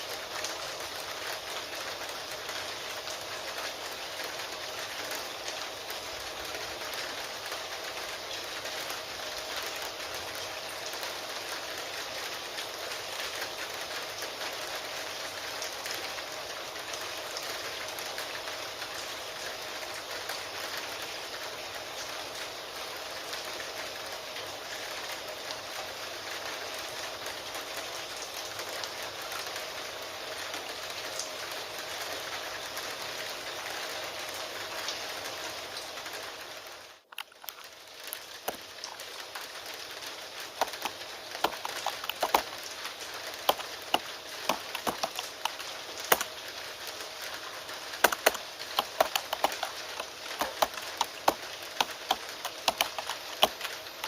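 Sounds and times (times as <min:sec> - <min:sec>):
steady rain: 0:00.0 - 0:54.0
keyboard typing clicks: 0:40.6 - 0:42.5, 0:43.5 - 0:46.3, 0:48.0 - 0:53.8.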